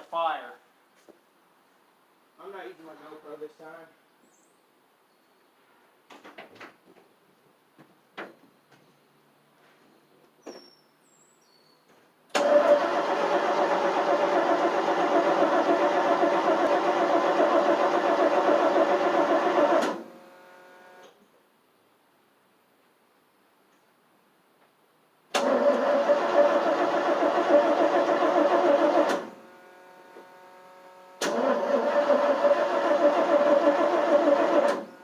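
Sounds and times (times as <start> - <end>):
engine cranking on starter: 12.3 - 20.2, 25.3 - 29.5, 31.2 - 35.0.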